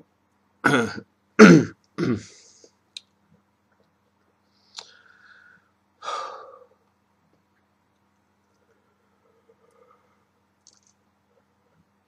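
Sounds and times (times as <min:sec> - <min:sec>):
man coughing: 0:00.6 - 0:02.4
quiet breathing: 0:04.4 - 0:07.0, 0:08.4 - 0:10.5
small clicks: 0:10.6 - 0:11.0.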